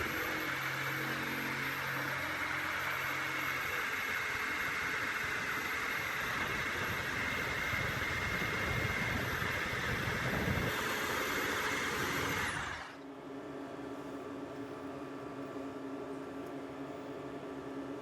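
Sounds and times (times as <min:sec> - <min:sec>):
power tool motor whining: 0:00.0 - 0:13.0.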